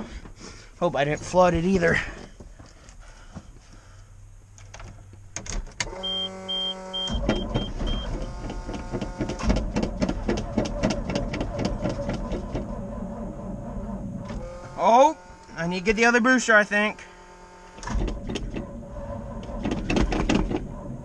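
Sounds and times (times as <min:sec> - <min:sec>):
buzzing tone: 0:05.9 - 0:09.5, 0:12.2 - 0:19.3.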